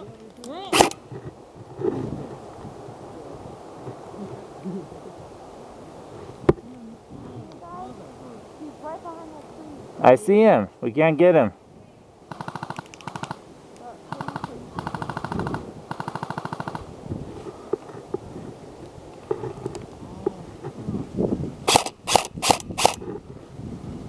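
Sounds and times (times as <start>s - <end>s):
airsoft gun full-auto bursts: 0.7s - 1.0s, 12.3s - 13.4s, 14.1s - 16.9s, 21.7s - 23.0s
sharp single shots: 0.7s - 1.0s, 12.3s - 13.4s, 14.1s - 16.9s, 21.7s - 23.0s.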